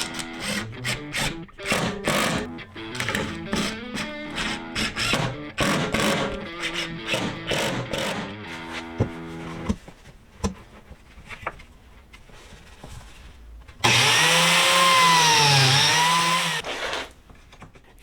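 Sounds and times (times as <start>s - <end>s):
guitar music: 0.0s - 9.7s
biscuit joiner cutting wood: 0.0s - 9.8s, 13.8s - 17.2s.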